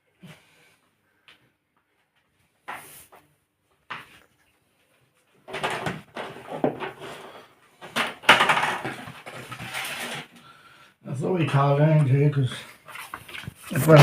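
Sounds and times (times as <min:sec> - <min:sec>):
clattering and rustling: 0:05.3 - 0:10.5.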